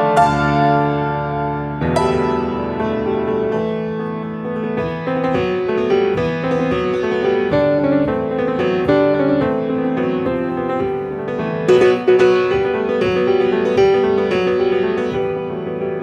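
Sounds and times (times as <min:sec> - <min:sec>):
solo piano: 0:00.0 - 0:16.0.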